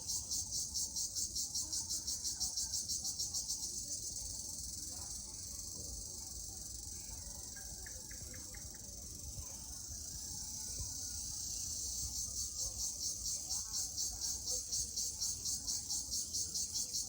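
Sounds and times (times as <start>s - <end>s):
crickets trilling: 0.0s - 17.0s.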